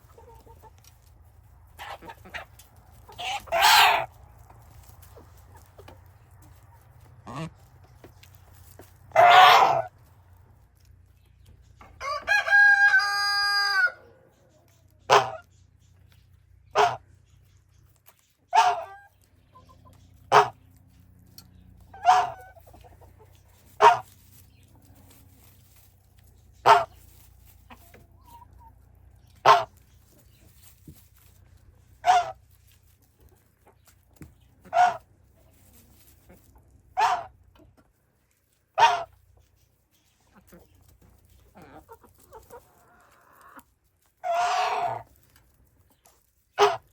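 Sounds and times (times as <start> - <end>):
chicken squawk: 1.8 - 4.1, 9.1 - 9.9, 12.0 - 14.3, 15.0 - 15.5, 16.7 - 17.0, 18.5 - 20.6, 21.9 - 24.2, 26.6 - 27.0, 29.4 - 29.8, 32.0 - 32.4, 34.6 - 35.1, 36.9 - 37.4, 38.8 - 39.2, 44.2 - 45.1, 46.6 - 46.9
rooster crowing: 12.0 - 14.0
short chicken calls: 12.0 - 14.2, 21.9 - 22.7.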